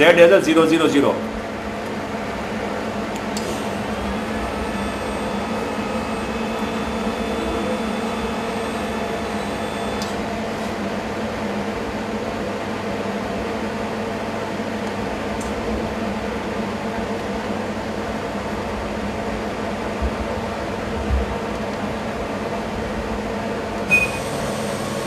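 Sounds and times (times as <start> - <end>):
machine electrical hum: 0.0 - 25.0
faint high whine: 3.4 - 10.4.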